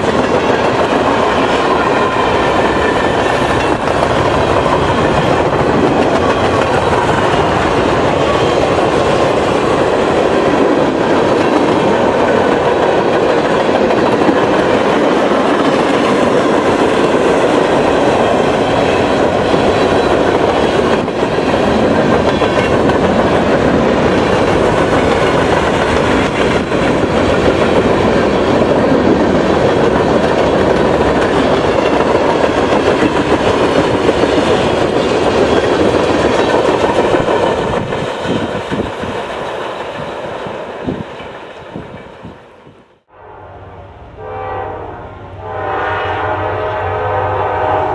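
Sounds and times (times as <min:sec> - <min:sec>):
train wheels clattering over rails: 0:00.0 - 0:42.4.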